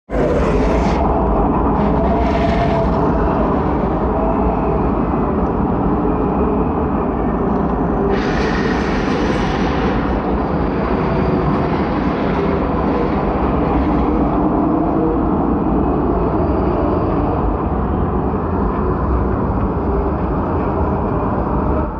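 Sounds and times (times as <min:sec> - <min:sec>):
rushing wind roar: 0:00.0 - 0:21.9.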